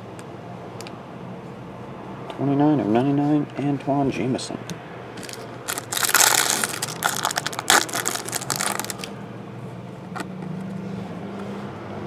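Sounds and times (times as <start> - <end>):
plastic wrapper crinkling and tearing: 5.2 - 9.1.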